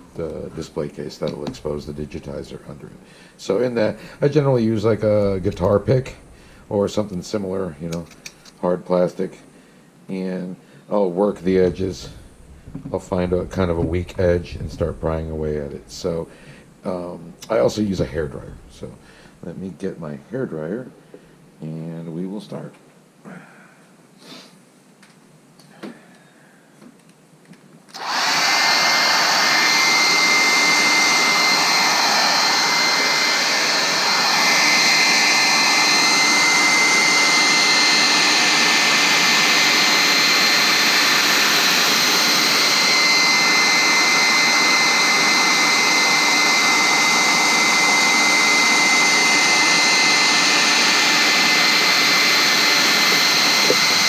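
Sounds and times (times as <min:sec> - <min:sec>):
hair dryer blowing: 0:03.4 - 0:07.1, 0:11.4 - 0:16.3, 0:27.9 - 0:54.0.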